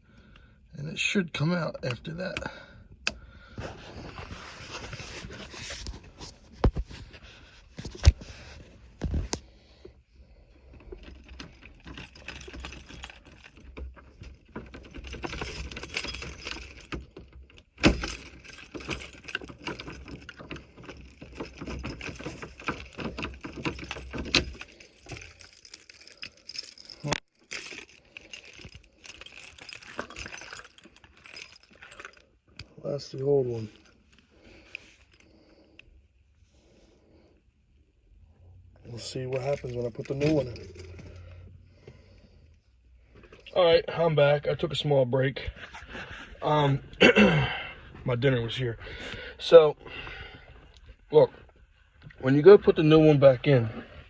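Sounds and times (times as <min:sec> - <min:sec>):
keys jangling on a ring: 0:10.3 - 0:32.8, 0:38.8 - 0:41.6.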